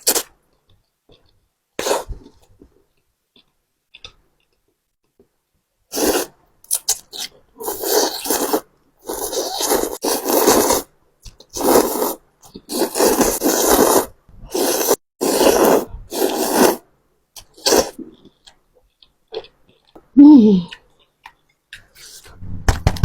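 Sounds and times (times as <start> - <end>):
mouth sounds eating noodles: 5.9 - 16.8, 17.4 - 21.0.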